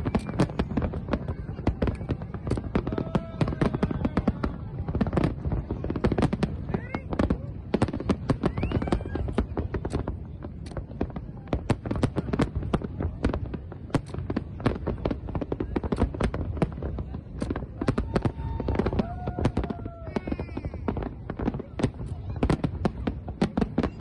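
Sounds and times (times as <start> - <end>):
firework whistles rising: 0.0 - 1.0, 8.3 - 10.1, 17.5 - 21.4
fireworks bangs and crackles: 0.0 - 24.0.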